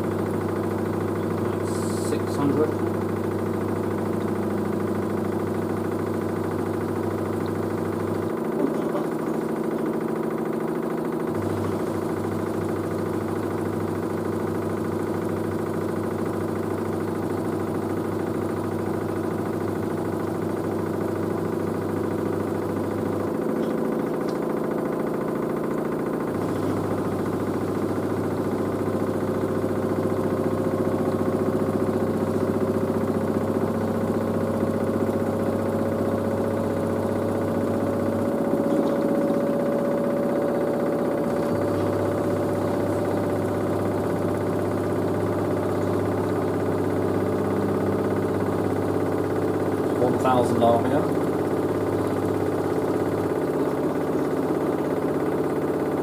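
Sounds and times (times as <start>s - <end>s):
washing machine hum: 0.0s - 56.0s
drum whine rising in pitch: 26.6s - 49.0s.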